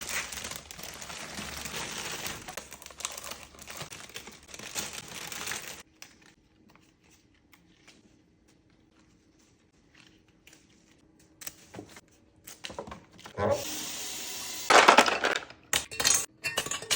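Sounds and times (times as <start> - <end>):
flower wrapping crinkling: 0.0 - 11.1.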